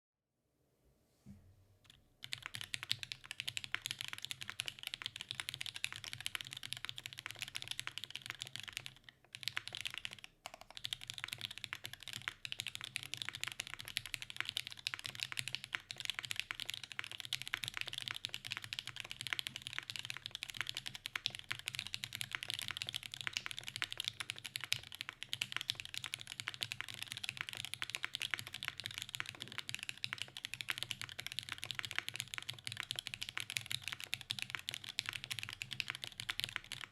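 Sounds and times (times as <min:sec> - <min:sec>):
fast typing on mechanical keyboard: 0:02.2 - 0:36.9.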